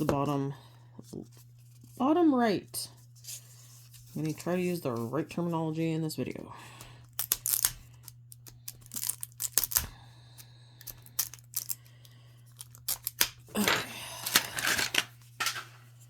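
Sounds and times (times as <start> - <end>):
plastic capsule clicking and snapping: 12.6 - 13.4.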